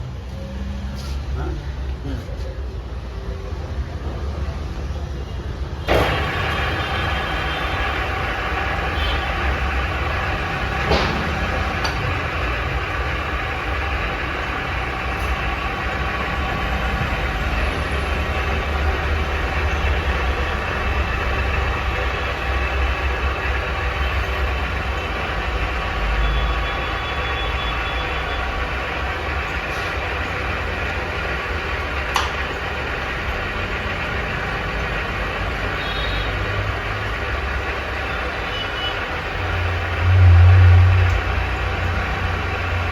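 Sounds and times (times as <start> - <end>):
lathe running hum: 5.8 - 42.9
gear whine: 5.9 - 42.9
sharp click: 32.1 - 32.4.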